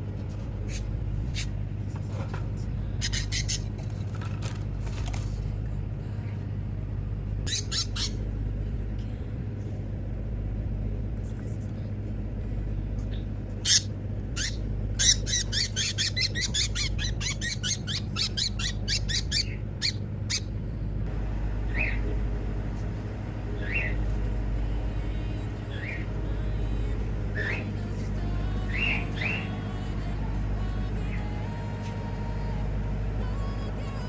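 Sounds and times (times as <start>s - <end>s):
steady low hum: 0.0s - 34.0s
parrot squawking: 3.0s - 3.7s, 7.4s - 8.2s, 13.6s - 20.5s.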